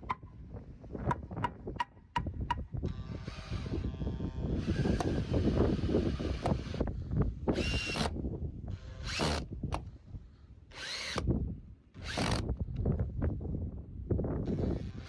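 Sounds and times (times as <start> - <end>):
cordless drill bursts: 4.6 - 6.9, 7.5 - 8.1, 8.9 - 9.5, 10.7 - 11.3, 12.0 - 12.5.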